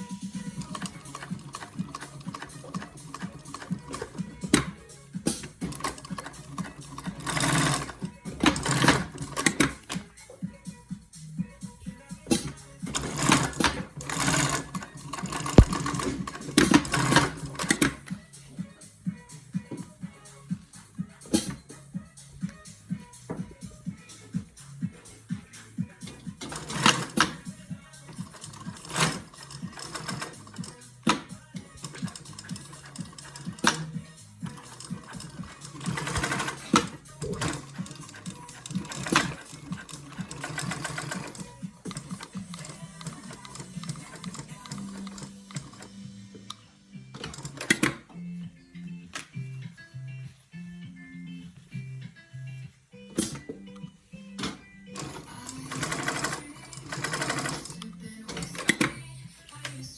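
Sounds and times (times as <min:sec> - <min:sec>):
sewing machine stitching: 0:00.3 - 0:10.4, 0:11.9 - 0:18.4, 0:21.2 - 0:21.8, 0:25.5 - 0:48.1, 0:53.1 - 0:53.5, 0:54.4 - 0:59.9.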